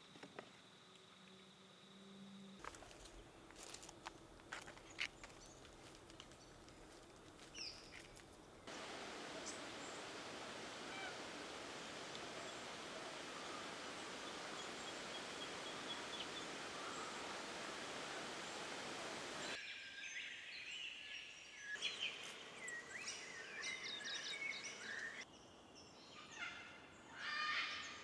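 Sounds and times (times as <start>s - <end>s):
outdoor background hiss: 0.0s - 20.7s, 21.8s - 27.2s
faint bird calls: 8.7s - 19.6s
bird chirp: 8.7s - 26.5s.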